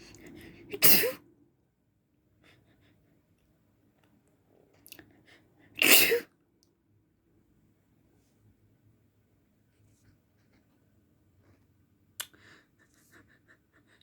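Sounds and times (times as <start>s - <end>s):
person sneezing: 0.7s - 1.2s, 5.8s - 6.3s.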